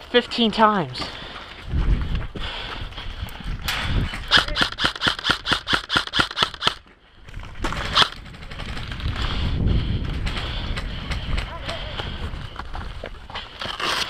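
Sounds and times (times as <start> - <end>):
airsoft gun rapid shots: 4.3 - 6.8.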